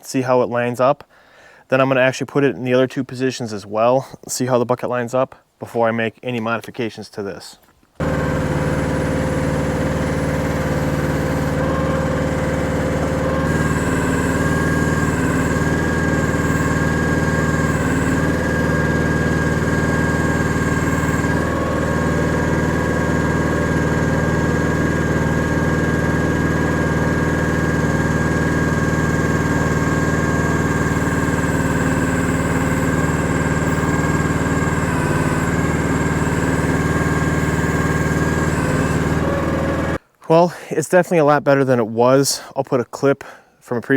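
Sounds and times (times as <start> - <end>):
steady high whine: 8.0 - 24.6, 27.9 - 40.0
excavator engine running: 8.0 - 40.0.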